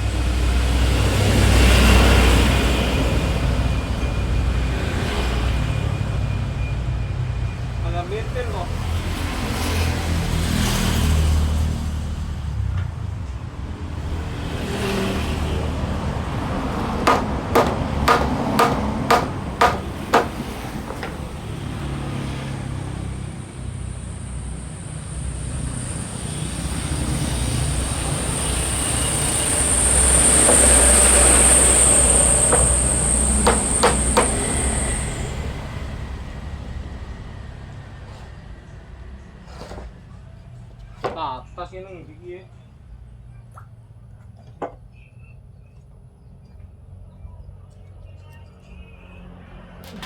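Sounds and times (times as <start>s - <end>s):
rumble of passing vehicles: 0.0s - 50.0s
hammer striking wood: 17.1s - 21.5s, 32.5s - 34.5s.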